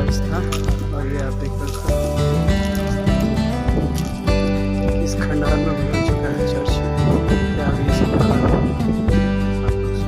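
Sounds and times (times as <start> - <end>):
background music with bass line: 0.0 - 10.0.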